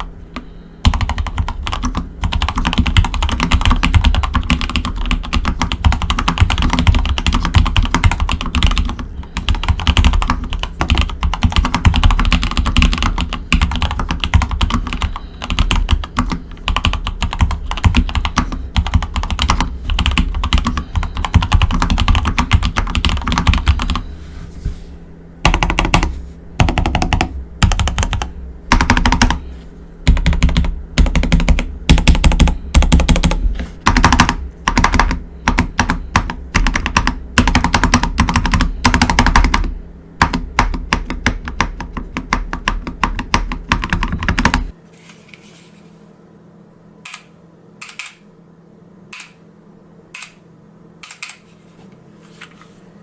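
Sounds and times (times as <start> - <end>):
mechanical keyboard typing: 0.8 - 24.0, 25.5 - 29.4, 30.0 - 44.8.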